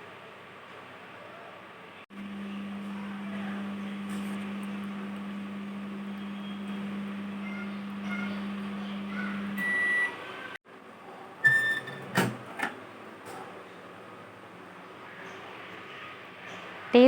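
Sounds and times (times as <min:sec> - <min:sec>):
microwave oven humming: 0:02.1 - 0:10.6
microwave beep: 0:02.2 - 0:10.3, 0:11.4 - 0:12.3.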